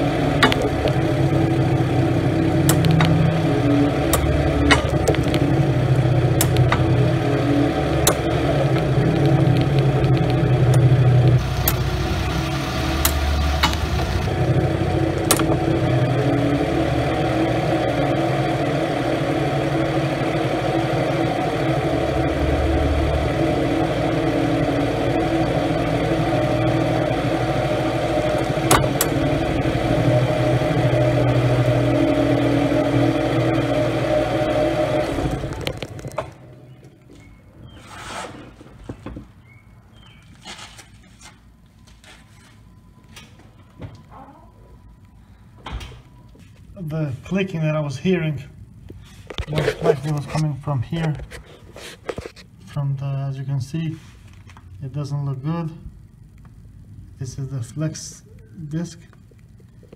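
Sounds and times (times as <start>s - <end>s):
car engine running: 0.0s - 37.8s.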